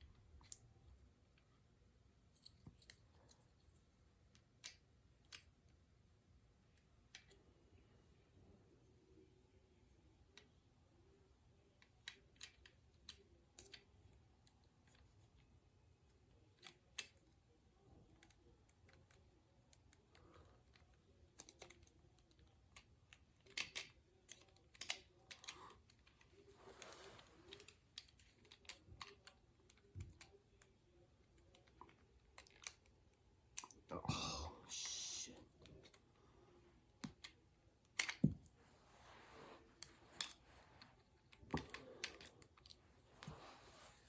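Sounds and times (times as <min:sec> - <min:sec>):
plastic toy parts clicking: 0:11.8 - 0:15.5, 0:16.4 - 0:17.3, 0:18.0 - 0:32.9, 0:37.0 - 0:38.3, 0:39.8 - 0:42.8.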